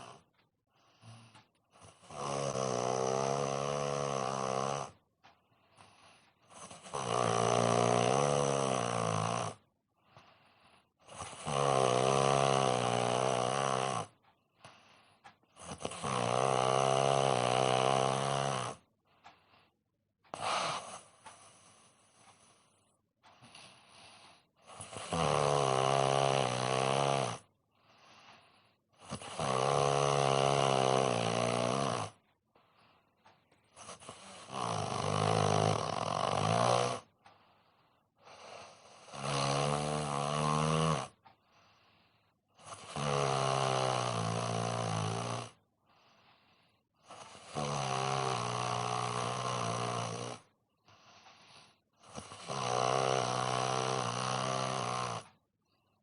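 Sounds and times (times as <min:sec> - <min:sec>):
soft breaths: 0:00.0 - 0:02.1, 0:03.8 - 0:07.0, 0:09.6 - 0:11.4, 0:12.7 - 0:16.1, 0:17.7 - 0:25.0, 0:26.8 - 0:29.5, 0:30.4 - 0:40.3, 0:41.1 - 0:42.9, 0:45.5 - 0:56.0
man snoring: 0:00.0 - 0:05.0, 0:05.8 - 0:19.6, 0:20.3 - 0:55.5.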